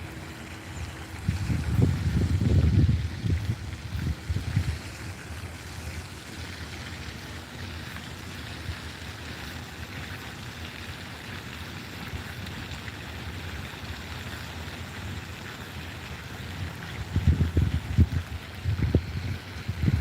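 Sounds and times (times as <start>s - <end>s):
wind buffeting microphone: 1.1s - 4.9s, 17.0s - 20.0s.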